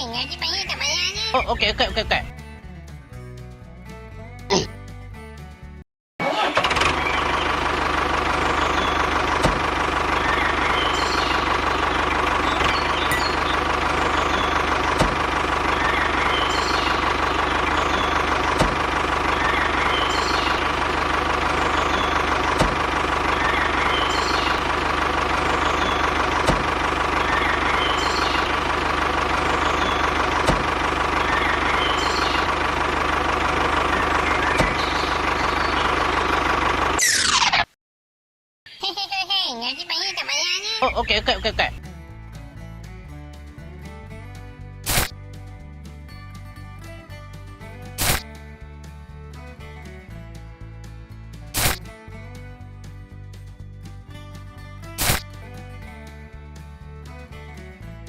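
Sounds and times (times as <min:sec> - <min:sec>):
engine-like drone: 0:06.3 - 0:37.7, 0:40.8 - 0:42.8
sharp clicks: 0:44.8 - 0:45.2, 0:55.0 - 0:55.4.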